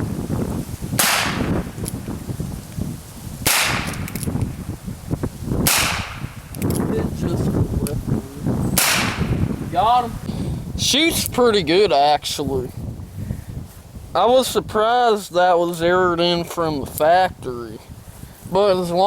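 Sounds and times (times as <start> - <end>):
revolver gunshots: 1.0 - 1.8, 3.4 - 4.2, 5.6 - 6.4, 8.8 - 9.6.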